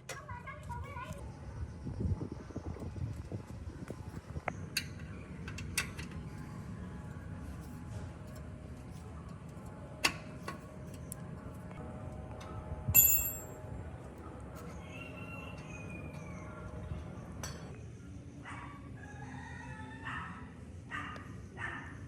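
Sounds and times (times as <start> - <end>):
low background hum: 0.0 - 22.0
metal clicks and clinks: 13.0 - 13.5.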